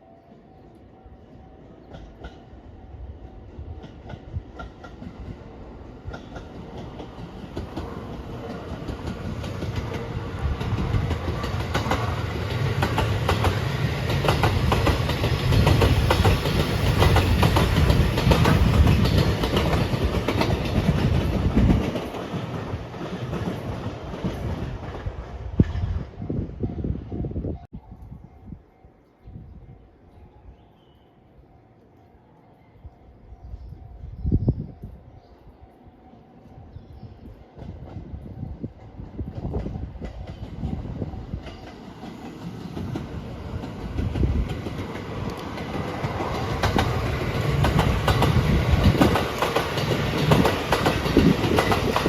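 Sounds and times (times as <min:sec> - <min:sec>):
electric train wheels clattering: 0:06.0 - 0:25.8, 0:37.6 - 0:52.0.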